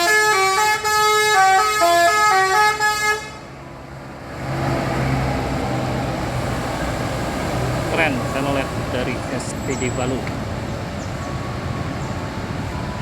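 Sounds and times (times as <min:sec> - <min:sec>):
bus horn playing melody: 0:00.0 - 0:03.5.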